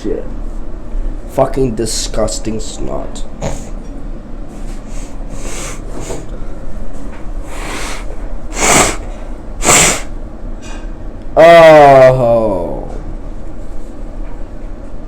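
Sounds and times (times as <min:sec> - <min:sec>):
man sniffing: 0:04.8 - 0:06.3, 0:07.4 - 0:10.1.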